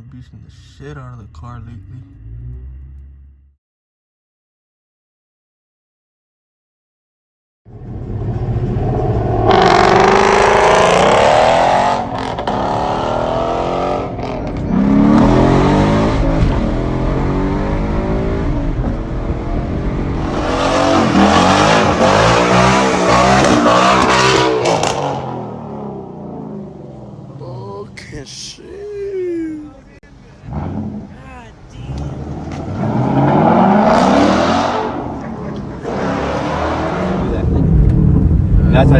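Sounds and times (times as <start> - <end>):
car engine revving: 0.0 - 3.6, 7.7 - 27.4, 30.1 - 38.9
loud rushing noise: 15.4 - 23.7.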